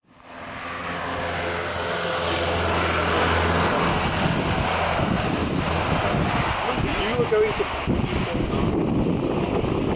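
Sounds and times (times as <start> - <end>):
jet engines humming: 0.1 - 9.8
wind rumbling on microphone: 0.1 - 9.9.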